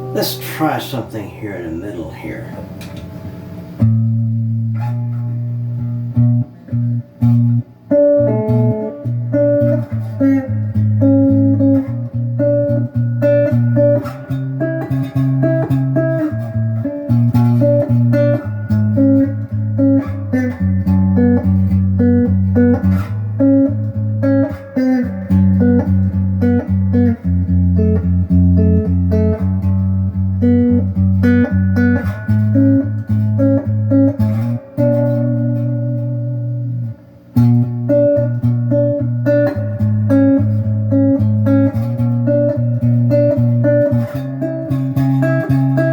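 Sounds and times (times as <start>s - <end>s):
electric guitar riffs through amp: 0.0s - 5.4s.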